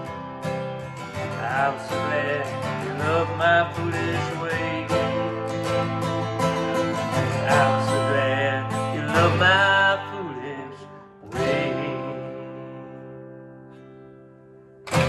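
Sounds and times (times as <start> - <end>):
acoustic guitar: 0.0 - 15.0
person singing: 1.2 - 12.9.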